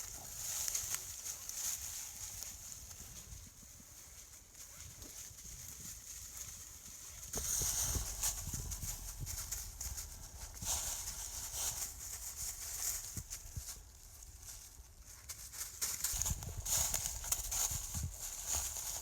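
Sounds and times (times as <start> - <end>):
footsteps through vegetation: 0.0 - 19.0
low wind rumble on microphone: 7.3 - 15.0, 16.1 - 19.0.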